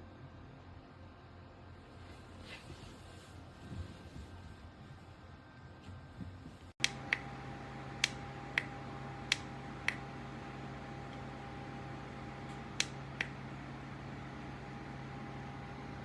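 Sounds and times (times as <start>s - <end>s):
handheld fan humming: 3.3s - 16.0s.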